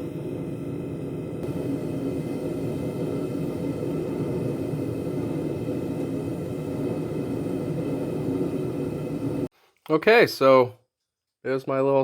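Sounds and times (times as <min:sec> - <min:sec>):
faint hum of steady tones: 0:00.0 - 0:09.5.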